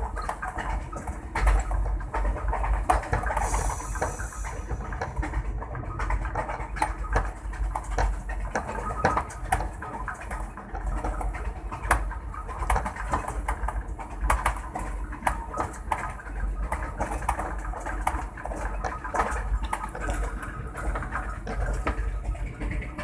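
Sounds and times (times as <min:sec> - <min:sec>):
locomotive engine rumbling: 0:03.3 - 0:06.3.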